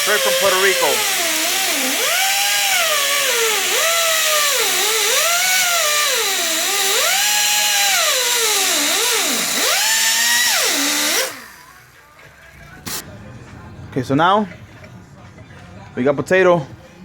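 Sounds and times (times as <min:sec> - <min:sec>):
cut-off wheel grinding metal: 0:00.0 - 0:12.0.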